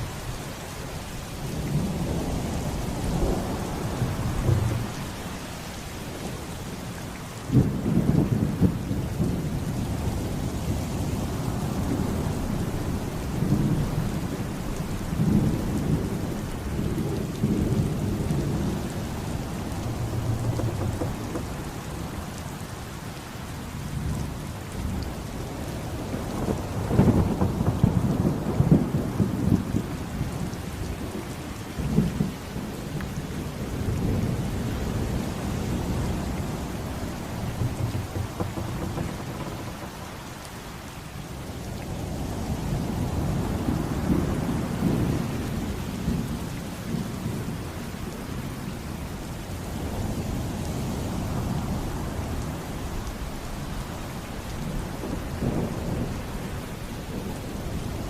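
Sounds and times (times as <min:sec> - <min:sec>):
heavy rain: 0:00.0 - 0:58.0
thunder rolling: 0:01.7 - 0:06.7, 0:11.8 - 0:23.1, 0:25.5 - 0:30.2, 0:33.8 - 0:41.2, 0:50.9 - 0:53.7.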